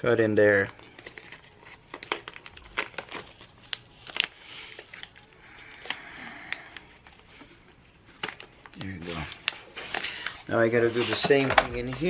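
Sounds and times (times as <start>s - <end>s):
vinyl wrap clicks and crackles: 0.4s - 12.0s.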